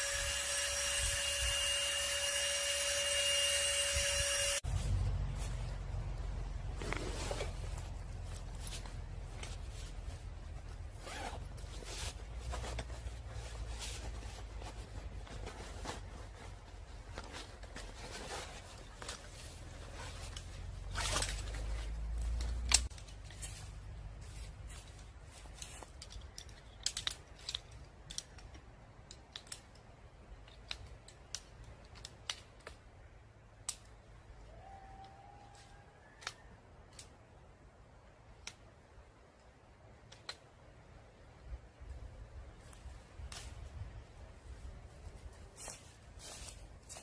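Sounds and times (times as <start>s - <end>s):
zipper being pulled: 11.0s - 12.6s
sharp clicks and snaps: 26.0s - 32.8s.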